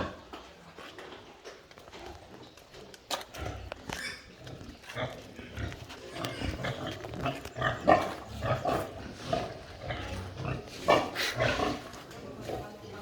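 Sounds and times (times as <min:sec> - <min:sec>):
pigs grunting: 0:03.2 - 0:13.0.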